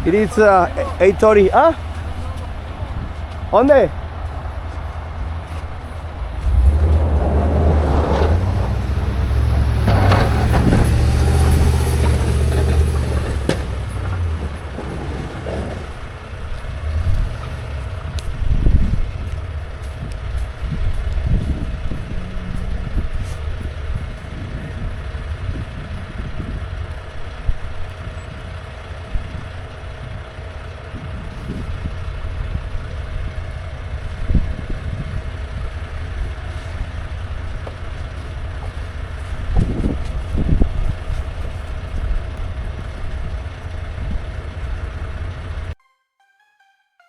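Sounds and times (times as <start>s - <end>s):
dull low thumps: 0.0s - 24.3s
truck engine droning: 0.0s - 45.8s.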